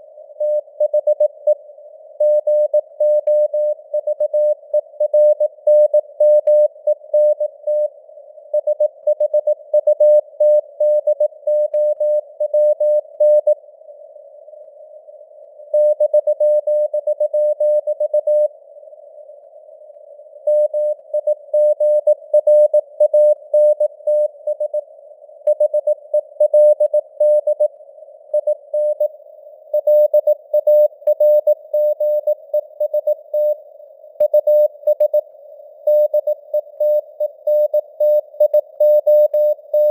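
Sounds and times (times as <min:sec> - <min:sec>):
morse code tone: 0:35.9 - 0:39.9.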